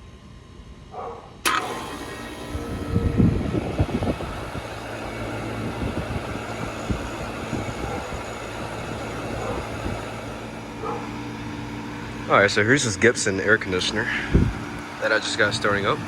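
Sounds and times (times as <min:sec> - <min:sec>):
air conditioner compressor hum: 0:00.0 - 0:16.0.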